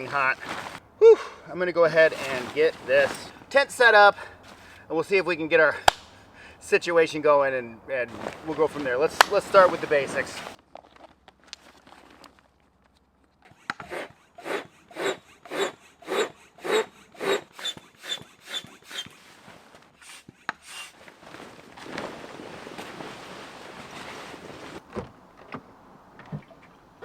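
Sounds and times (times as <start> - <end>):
steady rustling hiss: 0.0 - 10.6, 13.9 - 27.0
rhythmic scraping strokes with squeak: 13.9 - 19.2.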